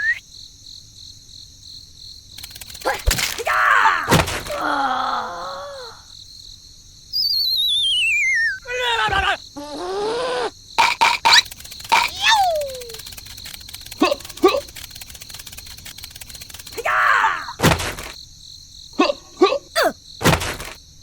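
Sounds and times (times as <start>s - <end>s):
falling wobbly whistle: 0.0s - 0.2s, 7.1s - 9.2s
groaning voices: 2.8s - 6.1s, 8.6s - 13.1s, 13.9s - 14.9s, 16.7s - 17.6s, 19.0s - 20.0s
sharp knocks: 17.6s - 18.2s, 20.2s - 20.8s.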